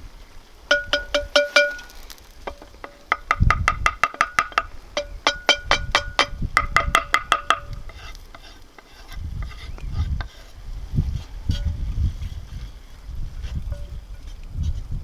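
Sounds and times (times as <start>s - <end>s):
metal utensil clinking in pan: 0.7s - 3.3s.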